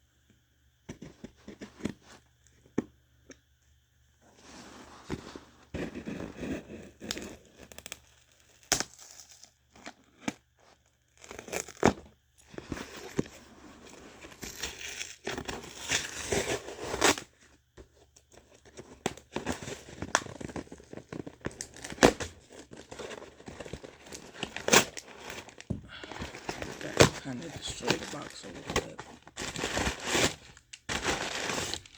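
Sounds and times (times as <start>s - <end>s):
cardboard tearing and crinkling: 14.5s - 17.3s, 18.6s - 31.9s.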